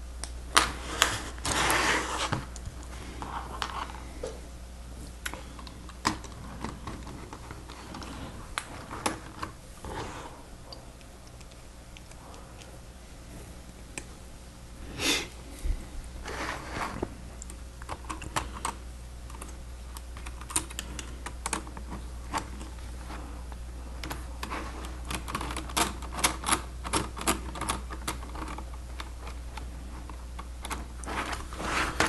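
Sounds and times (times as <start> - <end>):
rustle of parts: 17.8 - 32.0.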